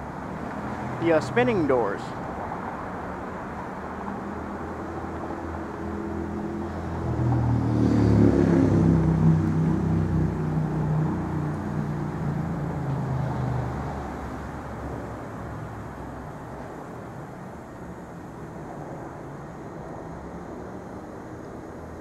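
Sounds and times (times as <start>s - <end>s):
traffic noise: 0.0s - 22.0s
vehicle engine passing by: 6.5s - 14.2s.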